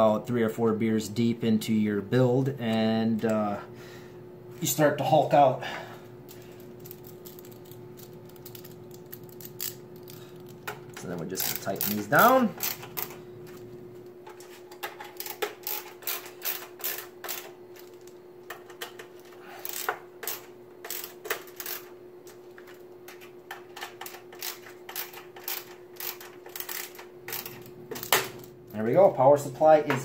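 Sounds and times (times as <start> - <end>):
faint steady hum: 0.0 - 30.0
screwdriver clicking on metal: 6.8 - 13.2, 14.8 - 28.2.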